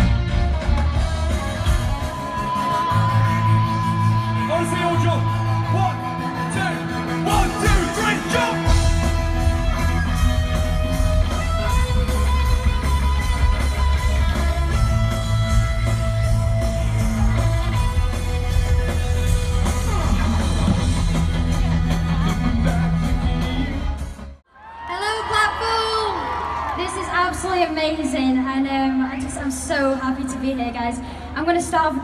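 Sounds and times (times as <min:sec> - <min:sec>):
bass guitar: 0:00.0 - 0:24.4
electric guitar: 0:00.0 - 0:24.4
steady drum beat: 0:00.0 - 0:24.4.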